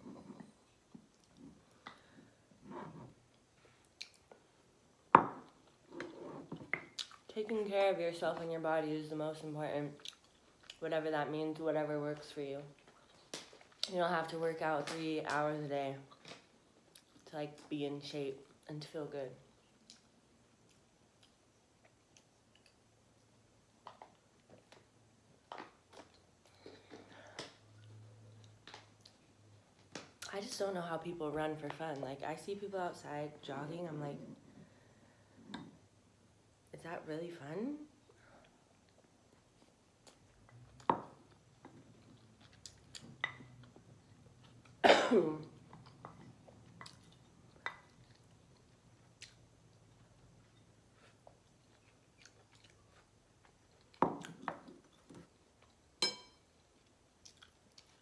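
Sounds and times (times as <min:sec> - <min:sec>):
chewing pasta: 0:09.9 - 0:10.8, 0:19.6 - 0:29.5, 0:38.4 - 0:44.8, 0:45.5 - 0:55.9, 0:56.5 - 0:58.0
throat cough: 0:44.8 - 0:45.4.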